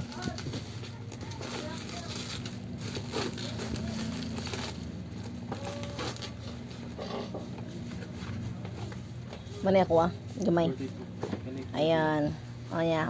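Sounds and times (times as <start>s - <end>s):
packaging rustling and crinkling: 0.0s - 9.7s
steady low hum: 0.0s - 13.0s.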